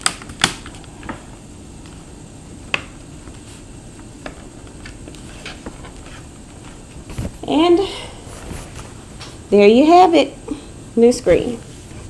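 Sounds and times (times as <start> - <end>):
plastic clips snapping into place: 0.0 - 1.2.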